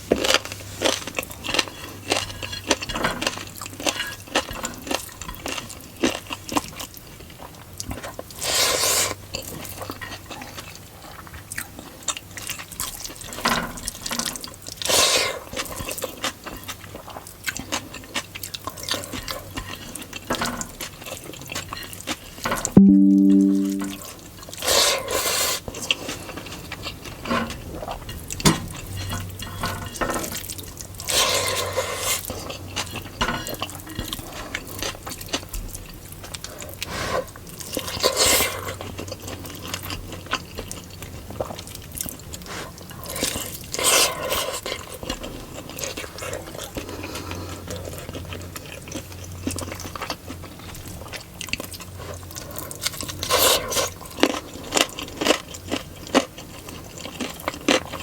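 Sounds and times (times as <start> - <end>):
faint low hum: 22.8 - 24.0
wet chewing: 37.7 - 58.0.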